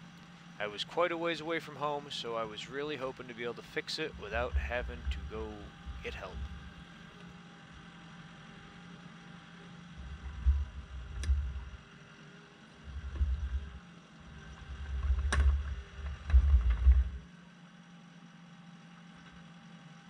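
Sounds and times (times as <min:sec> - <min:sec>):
diesel engine rumbling: 0:00.0 - 0:17.2.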